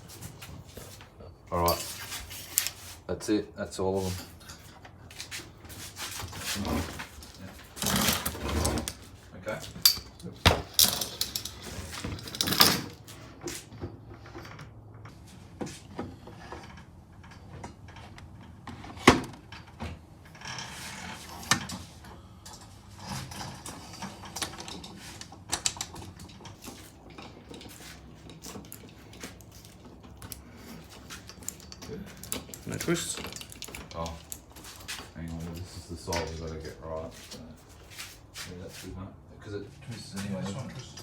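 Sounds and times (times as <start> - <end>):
metal parts clicking and clinking: 7.0 - 13.2, 23.4 - 36.7.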